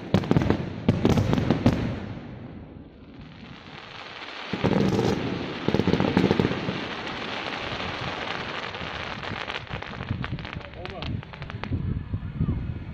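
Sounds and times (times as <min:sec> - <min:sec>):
loud firework bangs: 0:00.0 - 0:02.6, 0:03.2 - 0:11.7
firework crackling: 0:00.0 - 0:12.1
fireworks hissing: 0:03.1 - 0:11.8.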